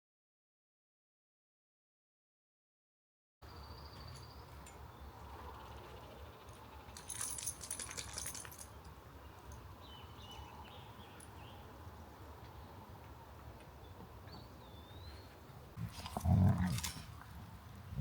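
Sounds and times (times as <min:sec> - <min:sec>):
metallic jingling: 0:06.2 - 0:10.4.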